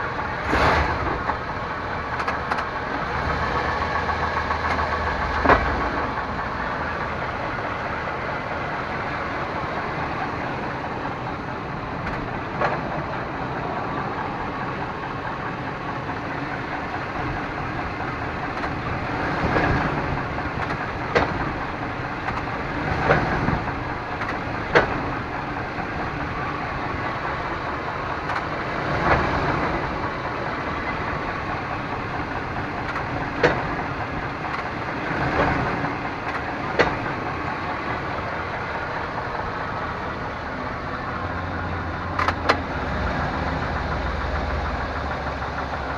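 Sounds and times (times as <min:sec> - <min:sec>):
car engine idling: 0:00.0 - 0:45.9.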